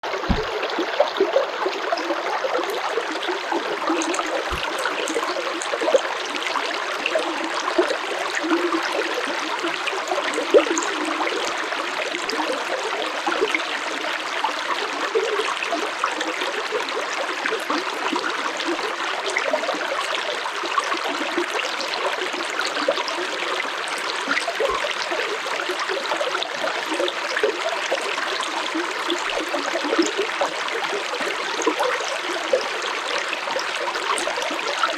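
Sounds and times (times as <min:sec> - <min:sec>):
stream flowing over rocks: 0:00.0 - 0:34.9.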